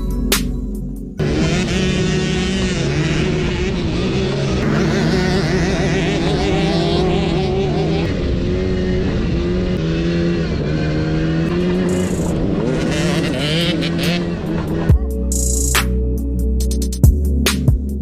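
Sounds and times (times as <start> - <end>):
small two-stroke engine revving: 1.2 - 15.0.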